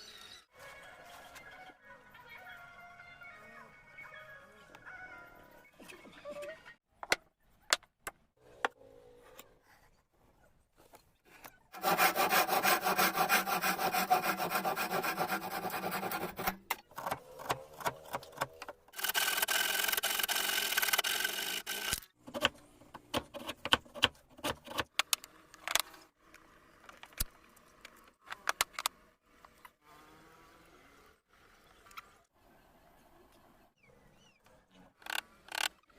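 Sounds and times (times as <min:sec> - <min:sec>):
wood being sawn: 0:11.7 - 0:18.2.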